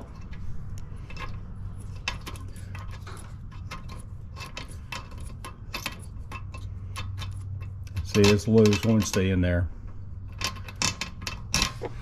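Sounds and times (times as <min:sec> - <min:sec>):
metallic clicking and rattling: 0:00.0 - 0:12.0
steady low hum: 0:00.0 - 0:12.0.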